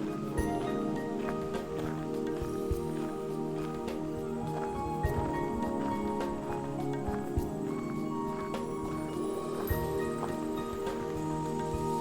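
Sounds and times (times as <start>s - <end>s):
faint footsteps: 0.0s - 12.0s
music with sustained chords: 0.0s - 12.0s.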